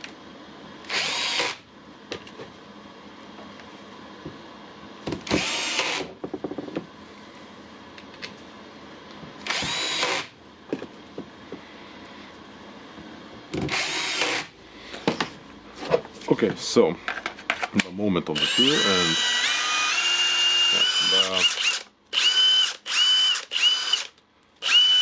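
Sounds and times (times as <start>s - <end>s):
impact wrench whirring: 0.9s - 1.6s, 5.2s - 6.2s, 9.4s - 10.4s, 13.6s - 14.5s, 18.4s - 25.0s.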